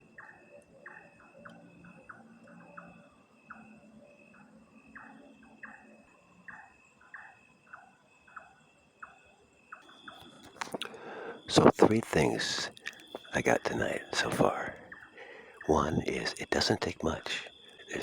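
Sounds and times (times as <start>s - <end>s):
high insect-like drone: 9.5s - 18.0s
faint low city hum: 10.0s - 18.0s.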